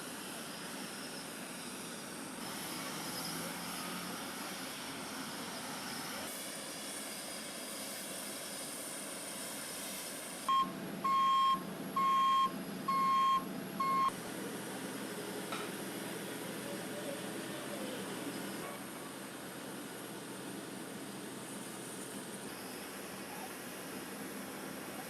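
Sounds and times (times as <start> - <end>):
reversing alarm beeps: 10.5 - 14.1.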